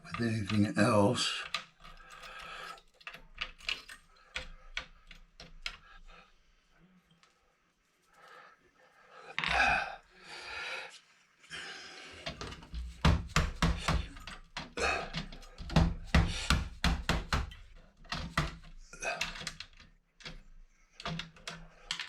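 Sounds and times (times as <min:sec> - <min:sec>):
sharp clicks and knocks: 0:12.3 - 0:22.0.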